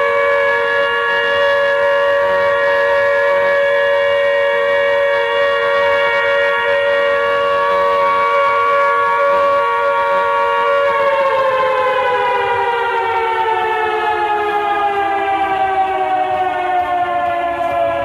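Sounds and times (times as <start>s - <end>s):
air raid siren wailing: 0.0s - 18.0s.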